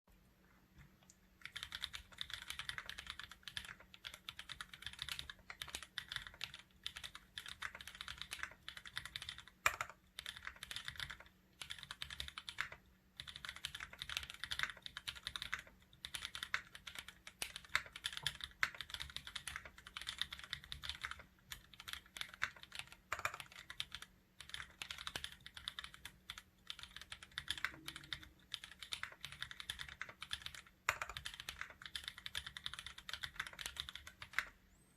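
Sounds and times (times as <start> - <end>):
mechanical keyboard typing: 1.4 - 34.6.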